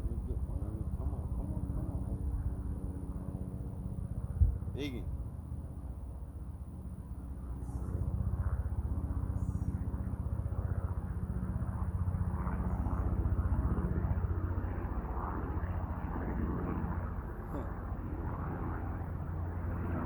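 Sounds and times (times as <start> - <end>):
low engine drone: 0.0 - 20.0.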